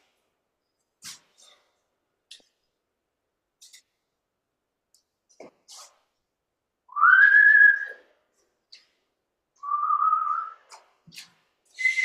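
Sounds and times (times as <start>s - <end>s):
person whistling: 6.9s - 8.1s, 9.6s - 10.6s, 11.8s - 12.0s.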